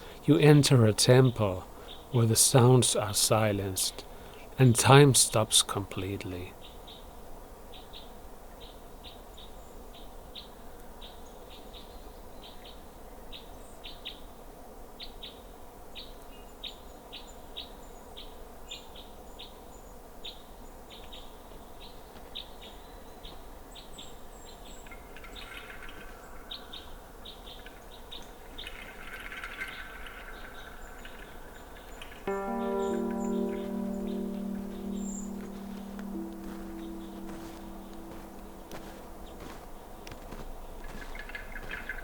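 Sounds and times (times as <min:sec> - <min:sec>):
small birds chirping: 0:22.8 - 0:42.0.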